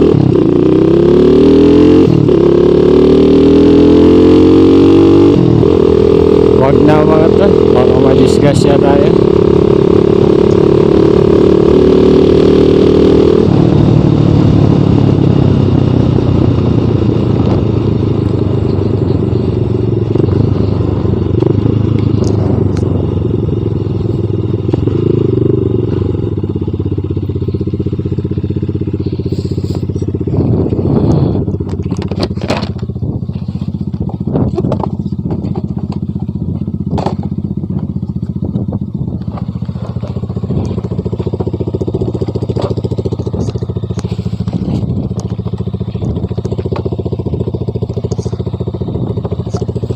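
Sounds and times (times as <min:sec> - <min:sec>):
motorcycle engine running: 0:00.0 - 0:49.9
sharp knocks and clatters: 0:34.1 - 0:36.0, 0:36.9 - 0:37.9.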